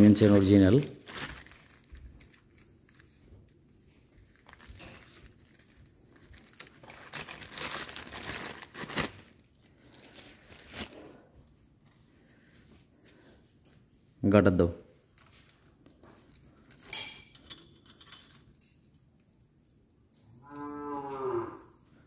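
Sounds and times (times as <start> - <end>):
crinkling and rustling handling: 0.0 - 22.0.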